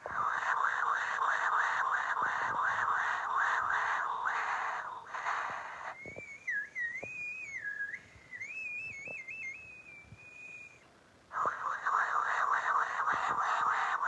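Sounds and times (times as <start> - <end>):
breathy fluttering hiss: 0.0 - 14.0
warbling whistle: 0.0 - 14.0.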